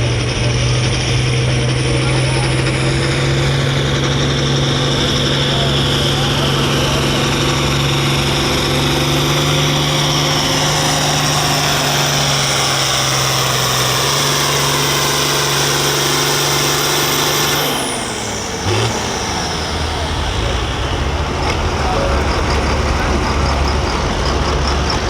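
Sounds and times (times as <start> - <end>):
tractor engine running under load: 0.0 - 25.0.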